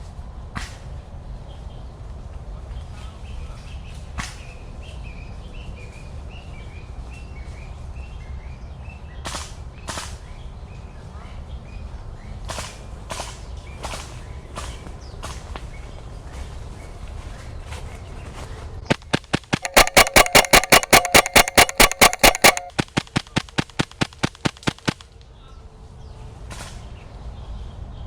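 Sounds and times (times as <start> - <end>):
sharp click: 18.9 - 25.0.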